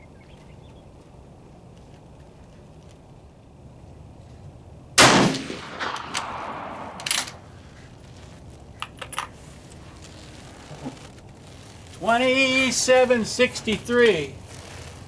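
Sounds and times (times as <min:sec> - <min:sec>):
rifle shot: 0:05.0 - 0:07.6.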